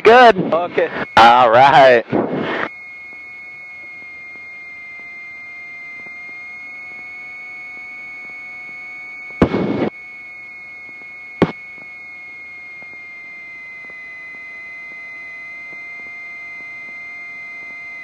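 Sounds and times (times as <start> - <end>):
static burst: 0.0 - 2.7, 9.4 - 10.0
steady high electrical tone: 0.0 - 18.0.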